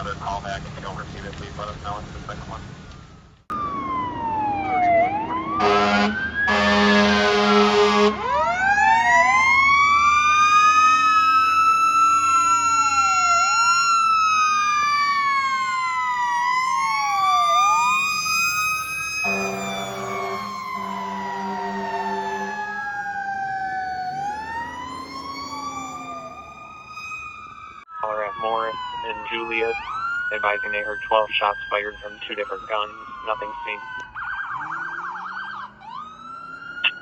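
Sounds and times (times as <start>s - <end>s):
fire engine sirens wailing: 0.0s - 37.0s
air horn blasts: 5.6s - 8.2s, 19.2s - 22.6s.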